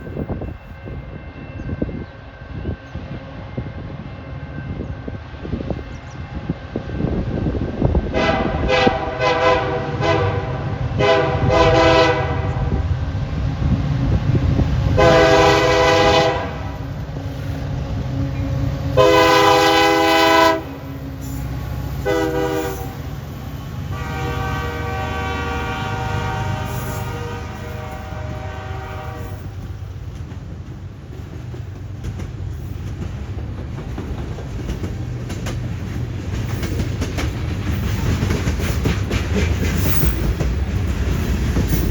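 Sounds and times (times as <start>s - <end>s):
locomotive horn blasts: 8.1s - 12.9s, 14.9s - 16.8s, 19.0s - 20.8s, 22.0s - 23.0s, 23.9s - 29.6s
freight cars clickety-clack: 29.1s - 41.9s.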